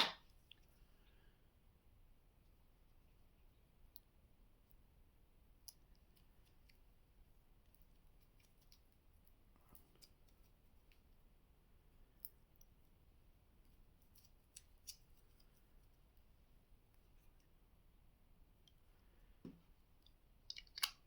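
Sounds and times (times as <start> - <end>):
small plastic clicks: 20.0 - 21.0.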